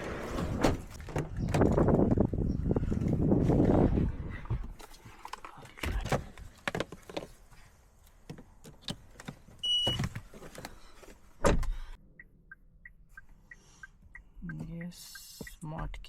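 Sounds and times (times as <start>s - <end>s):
clicks and handling noises in car: 4.7s - 16.0s.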